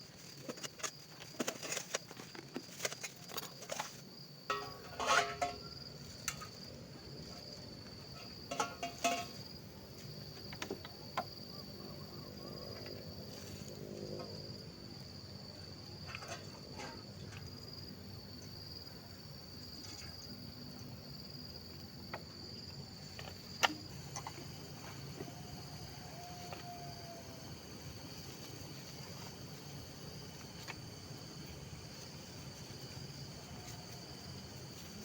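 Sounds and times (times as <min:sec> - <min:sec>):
insects droning: 0:00.0 - 0:35.0
knocks and clatters: 0:08.2 - 0:09.4.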